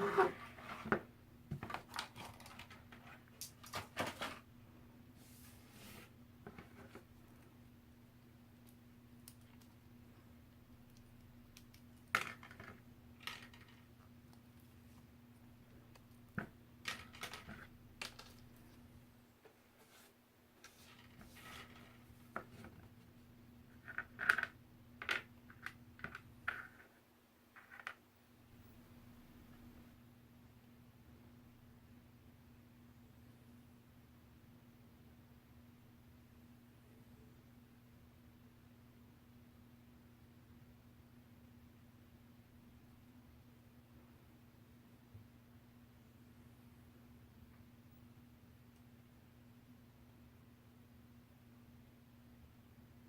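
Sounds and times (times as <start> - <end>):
plastic pieces rustling and clicking: 1.6 - 4.4, 15.9 - 18.6.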